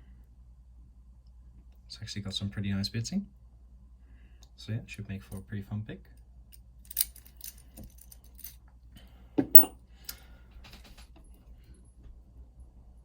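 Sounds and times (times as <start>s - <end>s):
lock and key clinking: 6.9s - 8.6s, 9.4s - 9.7s.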